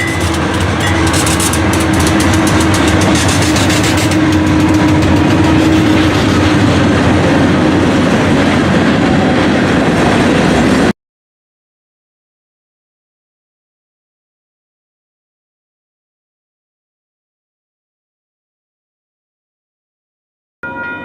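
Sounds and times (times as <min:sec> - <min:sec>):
wheels clicking over rail joints: 0:00.0 - 0:07.1
freight train rumbling past: 0:00.0 - 0:10.9
locomotive hum: 0:00.0 - 0:10.9.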